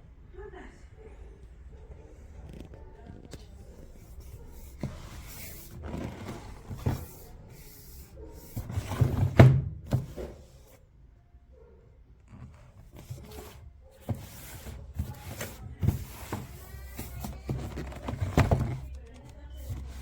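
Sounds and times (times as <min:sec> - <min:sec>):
rubbing and scraping: 0:03.8 - 0:10.8, 0:12.3 - 0:20.0.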